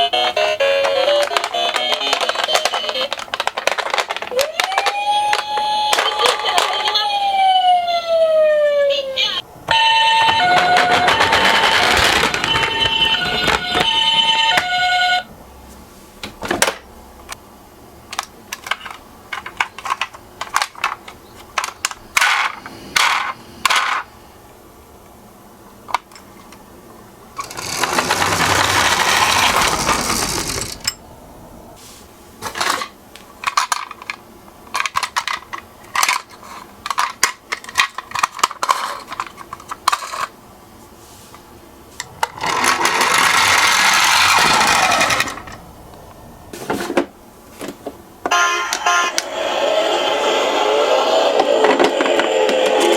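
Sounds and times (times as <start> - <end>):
toy cars clicking and clinking: 0.8 - 7.0, 9.7 - 13.9, 27.4 - 31.0, 32.6 - 40.3, 42.2 - 45.6
toy car rolling down a slope: 10.2 - 13.9, 27.4 - 30.8, 42.2 - 45.6.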